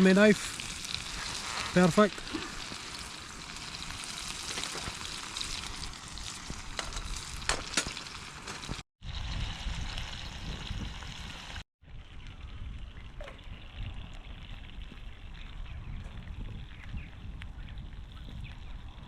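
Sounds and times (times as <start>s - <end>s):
burgers sizzling in a frying pan: 0.0s - 11.6s.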